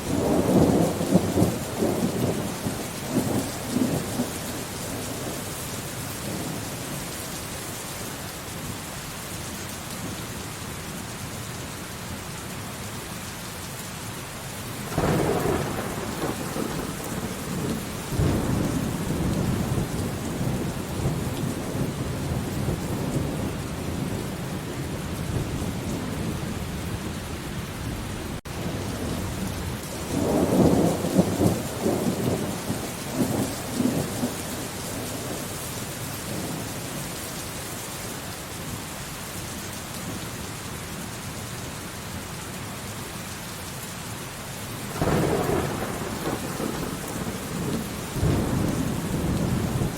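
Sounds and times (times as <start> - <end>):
steady rain falling: 0.0 - 49.9
thunder rumbling: 14.9 - 35.5, 44.9 - 49.9.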